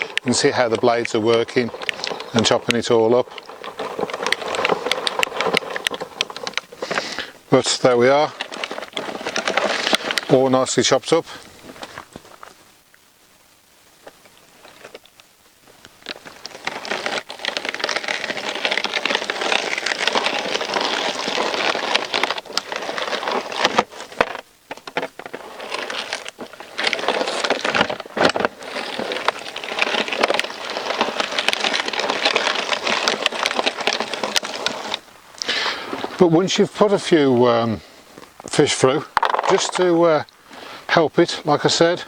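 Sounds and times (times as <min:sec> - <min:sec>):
hand-cranked bait crusher grinding: 0:00.0 - 0:10.6, 0:16.3 - 0:35.7, 0:39.2 - 0:40.0.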